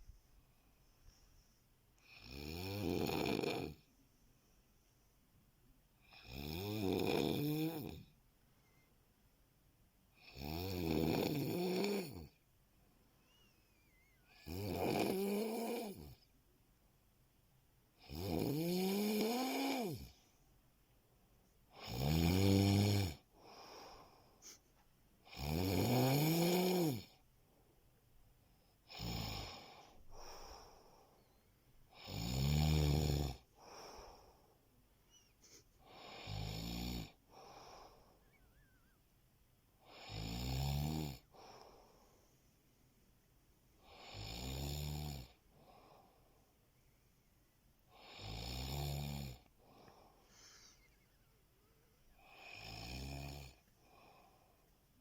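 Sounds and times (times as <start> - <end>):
person snoring loudly: 2.0 - 3.8, 6.1 - 8.1, 10.2 - 12.3, 14.4 - 16.2, 18.0 - 20.2, 21.8 - 23.2, 25.3 - 27.2, 28.9 - 29.8, 31.9 - 33.4, 35.9 - 37.2, 39.8 - 41.3, 43.8 - 45.4, 47.9 - 49.4, 52.2 - 54.1.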